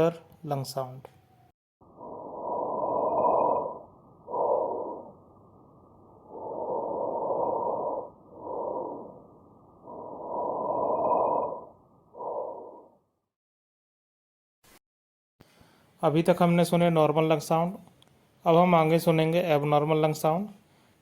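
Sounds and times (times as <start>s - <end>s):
breathing through a stethoscope: 15.4s - 16.0s, 20.6s - 21.0s.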